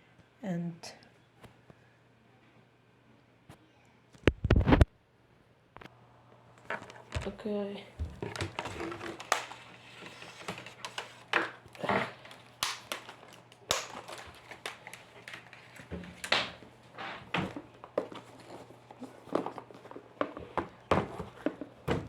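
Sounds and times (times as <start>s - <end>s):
packaging crinkling and crackling: 6.5s - 22.0s.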